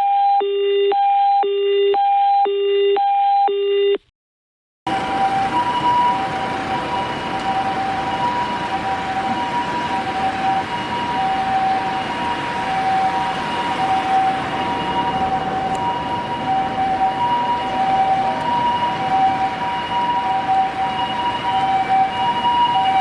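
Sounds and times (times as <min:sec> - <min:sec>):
ambulance two-tone siren: 0:00.0 - 0:04.0, 0:04.9 - 0:23.0
traffic and road noise: 0:04.9 - 0:23.0.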